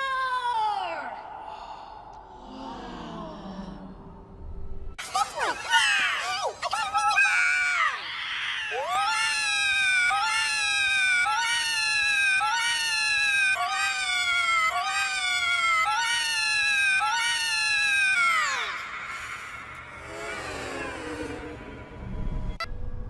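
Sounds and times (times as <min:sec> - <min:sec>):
high-pitched cartoon voice cry: 0:05.0 - 0:19.0.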